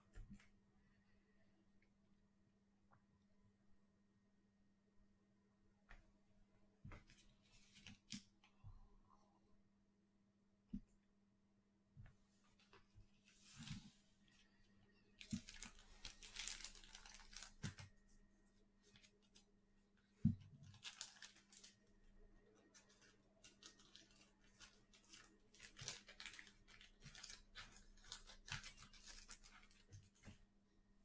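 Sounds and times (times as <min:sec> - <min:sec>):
wrappers tearing and crinkling: 0:15.2 - 0:17.8, 0:20.6 - 0:21.8, 0:22.6 - 0:29.9.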